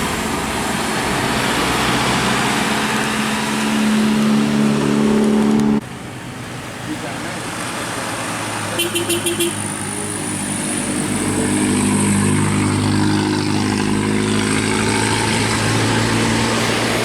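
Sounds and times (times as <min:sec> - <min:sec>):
heavy vehicle engine humming: 0:00.0 - 0:17.0
pulsing horn toot: 0:08.8 - 0:09.8.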